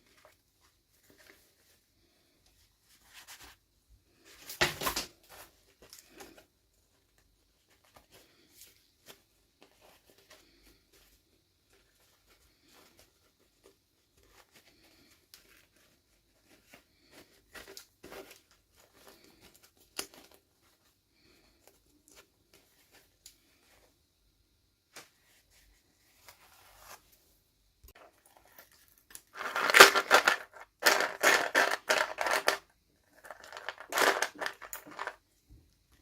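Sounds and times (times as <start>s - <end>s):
packaging crinkling and tearing: 28.2s - 32.6s.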